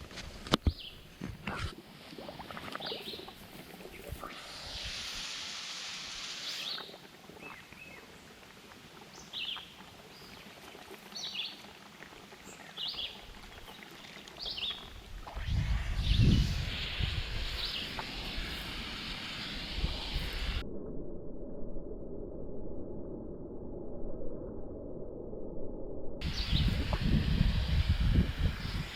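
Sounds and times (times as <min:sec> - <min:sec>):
brief hiss: 0:04.0 - 0:07.0, 0:15.2 - 0:20.6
low rumble: 0:15.2 - 0:28.8.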